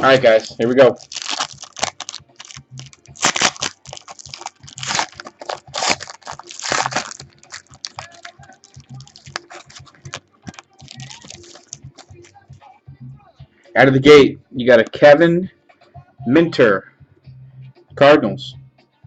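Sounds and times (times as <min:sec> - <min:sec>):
foil wrapper crinkling: 0:00.0 - 0:12.3
foil wrapper tearing: 0:00.2 - 0:12.3.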